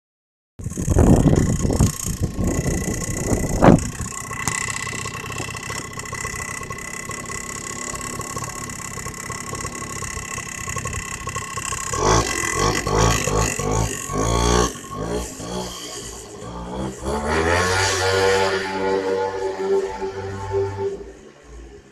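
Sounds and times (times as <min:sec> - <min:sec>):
moped engine knocking: 0:00.6 - 0:16.8.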